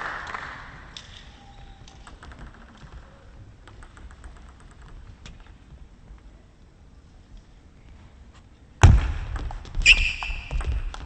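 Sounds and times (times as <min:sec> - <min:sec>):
table tennis ball bouncing: 0:09.3 - 0:11.0.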